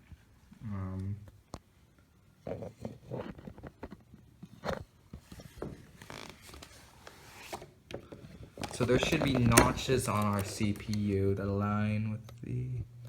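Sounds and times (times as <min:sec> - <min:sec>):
computer hardware clicking and scraping: 0:08.7 - 0:11.2.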